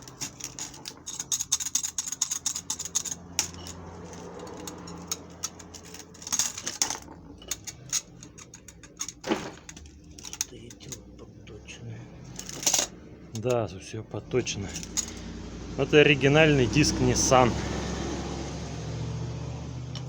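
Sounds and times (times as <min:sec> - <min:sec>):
clutch disc hub rattling: 0:00.0 - 0:11.4, 0:14.3 - 0:15.6.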